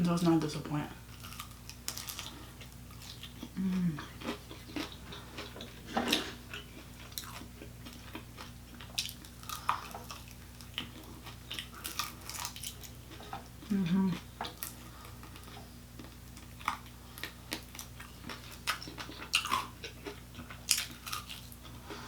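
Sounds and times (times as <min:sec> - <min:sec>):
chewing and crunching: 0:01.1 - 0:22.0.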